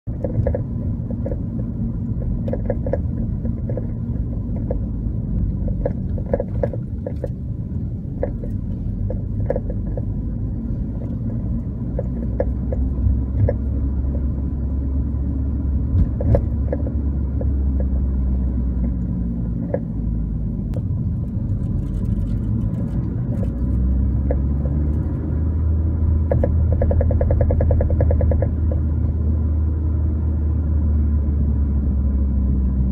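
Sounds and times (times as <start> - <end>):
car road rumble: 0.0 - 32.9
suspension clunks and knocks: 0.1 - 14.6, 15.3 - 18.1, 26.2 - 29.0.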